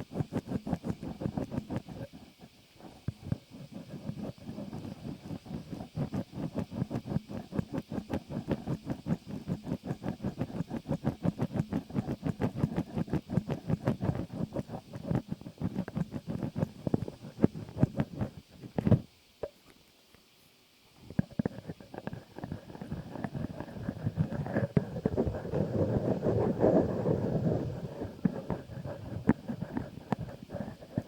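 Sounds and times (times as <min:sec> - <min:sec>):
rustling on microphone: 0:00.0 - 0:31.0.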